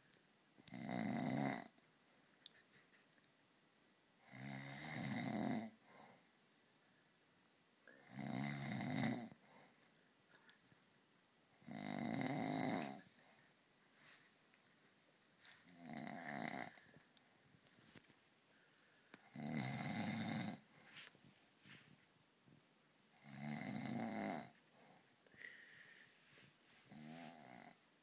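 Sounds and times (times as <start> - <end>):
man snoring: 0.7 - 1.7, 4.2 - 5.8, 8.0 - 9.4, 11.6 - 13.1, 15.7 - 16.8, 19.2 - 20.7, 23.2 - 24.6, 26.8 - 27.8.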